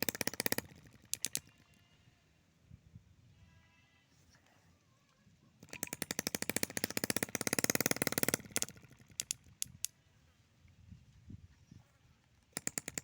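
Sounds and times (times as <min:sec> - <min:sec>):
sharp clicks: 0:00.0 - 0:01.7, 0:05.6 - 0:10.0, 0:12.6 - 0:13.0
two-stroke engine popping: 0:00.0 - 0:01.7, 0:05.6 - 0:09.9, 0:12.6 - 0:13.0.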